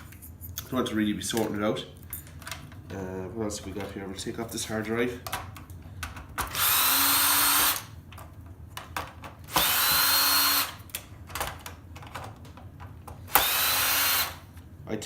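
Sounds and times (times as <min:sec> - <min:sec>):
power drill whirring: 0:06.5 - 0:08.0, 0:09.5 - 0:10.9, 0:13.3 - 0:14.5.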